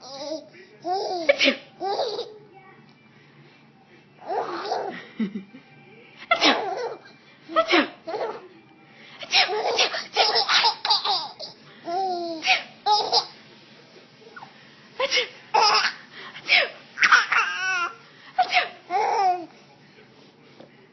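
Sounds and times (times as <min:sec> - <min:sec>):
baby laughing: 0:00.0 - 0:02.4, 0:04.3 - 0:05.0, 0:06.3 - 0:07.1, 0:08.1 - 0:08.4, 0:09.2 - 0:13.4, 0:15.5 - 0:16.0, 0:17.0 - 0:19.5
woman sneezing: 0:06.3 - 0:06.7, 0:18.4 - 0:18.8.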